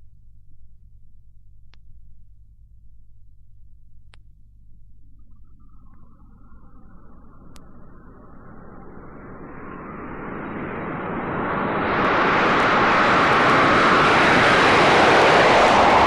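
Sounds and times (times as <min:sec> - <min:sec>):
jet airliner engine roar: 0:05.7 - 0:16.0.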